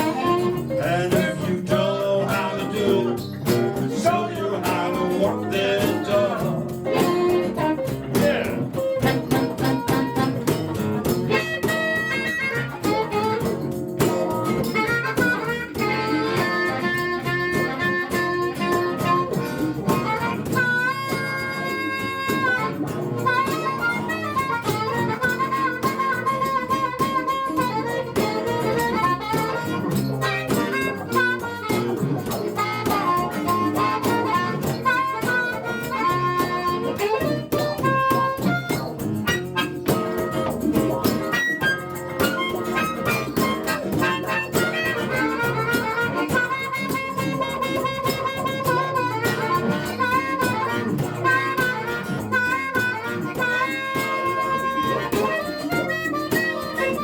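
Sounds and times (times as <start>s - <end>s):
blues harmonica solo: 0.0s - 57.0s
live band with guitar: 0.0s - 57.0s.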